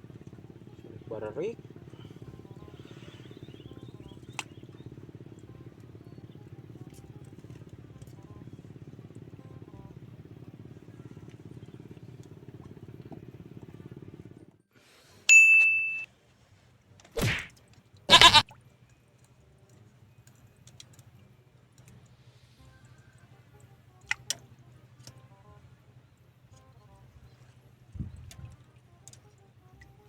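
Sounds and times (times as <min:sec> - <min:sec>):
music: 0:00.0 - 0:12.4, 0:18.6 - 0:30.0
low steady hum: 0:00.0 - 0:14.3
small engine running: 0:00.0 - 0:14.6
sharp ding: 0:15.3 - 0:16.1
bleat-like calls: 0:18.1 - 0:18.4.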